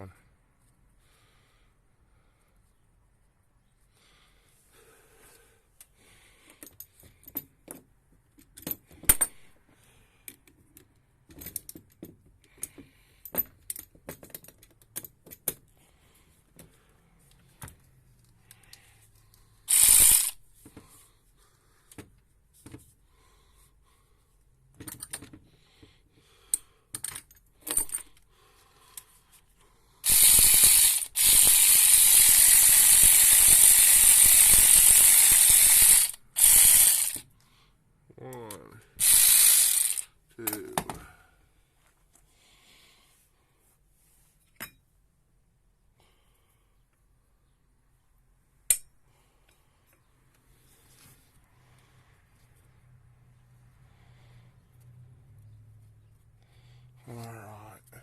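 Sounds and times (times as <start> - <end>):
socket ratchet wrench ratcheting: 19.7 - 20.4, 30.0 - 37.2, 39.0 - 40.1.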